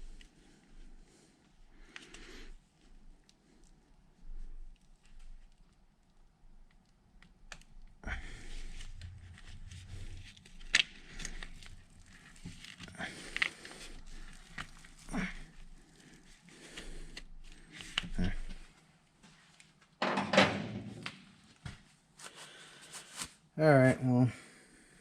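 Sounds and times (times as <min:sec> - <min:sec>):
rustling of parts: 0:08.5 - 0:23.3.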